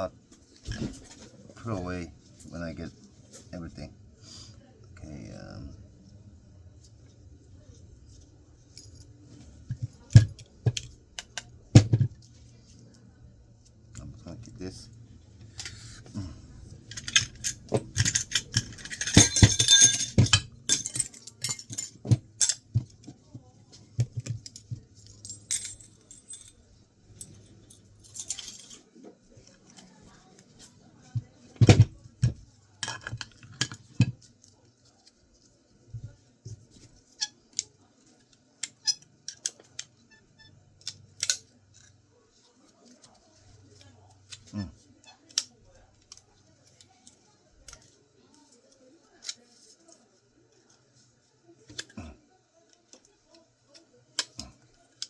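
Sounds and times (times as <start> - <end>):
metal parts and tools clinking: 16.9 - 22.8, 24.0 - 26.6, 27.2 - 28.8, 31.6 - 34.1, 40.9 - 41.5, 54.2 - 54.5.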